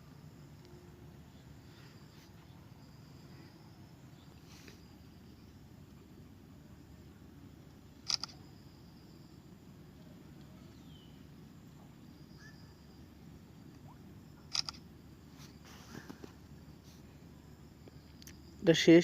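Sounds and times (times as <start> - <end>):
low steady background noise: 0.0 - 19.0
phone camera shutter clicks: 8.1 - 8.4, 14.5 - 14.8.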